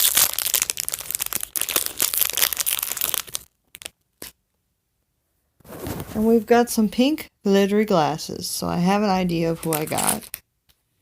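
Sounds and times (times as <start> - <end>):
plastic bag crinkling: 0.0 - 4.3, 9.6 - 10.4.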